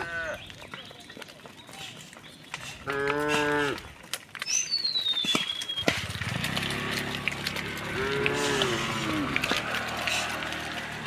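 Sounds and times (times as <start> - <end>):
herd of cattle moving: 0.0 - 11.0
cow mooing: 2.9 - 3.8, 6.6 - 10.8.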